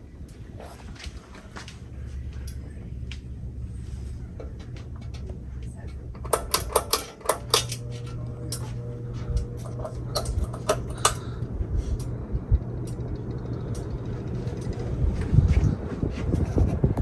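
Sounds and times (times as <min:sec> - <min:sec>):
ceiling fan motor hum: 0:00.0 - 0:17.0
sharp clicks and ticks: 0:09.8 - 0:11.2, 0:12.0 - 0:14.8.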